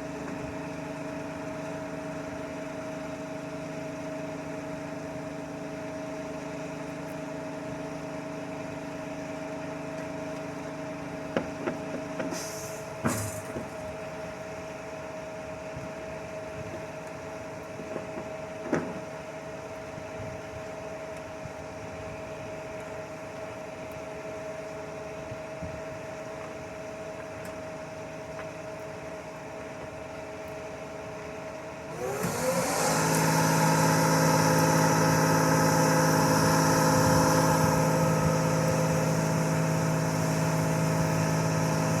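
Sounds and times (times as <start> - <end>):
truck diesel engine revving: 32.0 - 42.0.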